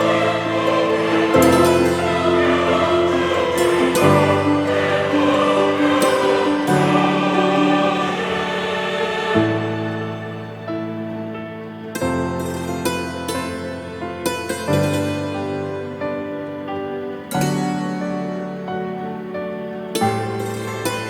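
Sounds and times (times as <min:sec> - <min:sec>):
choral music: 0:00.0 - 0:21.0.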